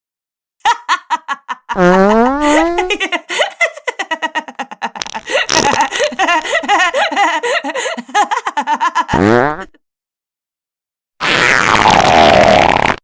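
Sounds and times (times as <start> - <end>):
person laughing: 0.6 - 9.8.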